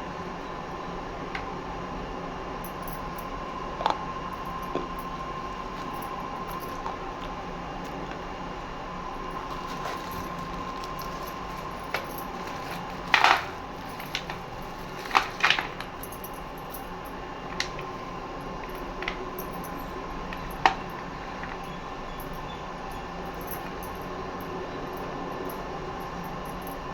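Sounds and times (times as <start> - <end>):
steady hum: 0.0 - 26.9
slate pieces clinking: 9.4 - 16.5.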